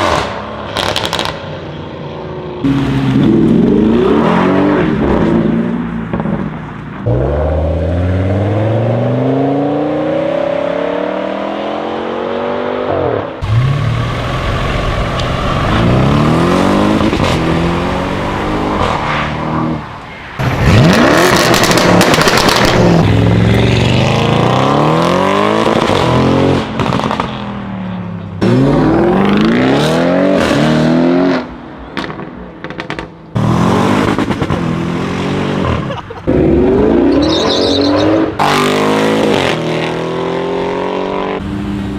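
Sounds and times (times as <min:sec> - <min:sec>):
car engine revving and accelerating: 0:07.0 - 0:19.8, 0:20.4 - 0:27.4, 0:28.4 - 0:31.5, 0:32.7 - 0:41.9.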